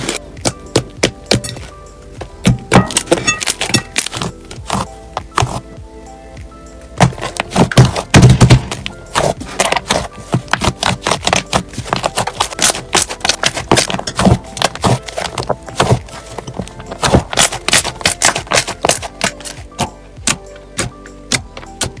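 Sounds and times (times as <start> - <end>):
slime crackling and popping: 7.1 - 19.6.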